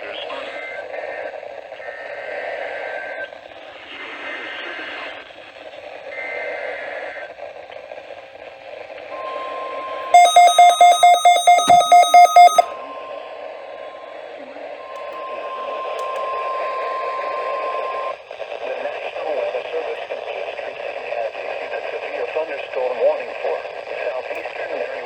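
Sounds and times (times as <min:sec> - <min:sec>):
rapid alarm beeping: 0:10.2 - 0:12.7
steady warning tone: 0:10.2 - 0:12.7.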